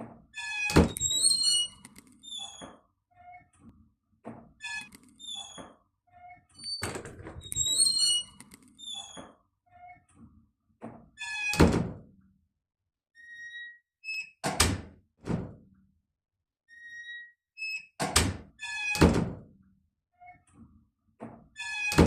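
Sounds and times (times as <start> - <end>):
door closer squeaky creaks: 0.3 - 3.7, 4.6 - 10.2, 11.2 - 11.9, 16.7 - 19.2, 21.6 - 22.0.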